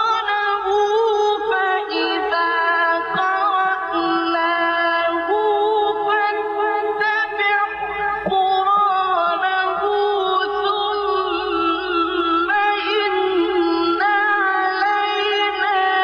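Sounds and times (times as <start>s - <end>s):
man chanting melodically: 0.0s - 16.0s.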